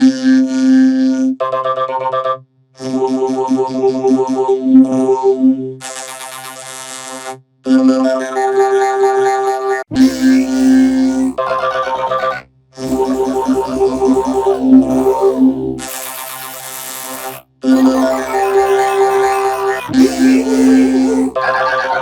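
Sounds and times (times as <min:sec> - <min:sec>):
chopped synthesizer notes: 0:09.9 - 0:22.0.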